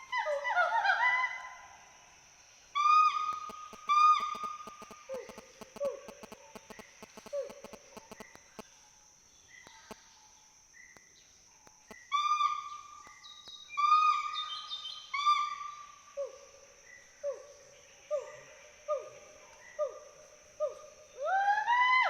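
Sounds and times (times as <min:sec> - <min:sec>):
steady high hum: 0:03.4 - 0:08.7.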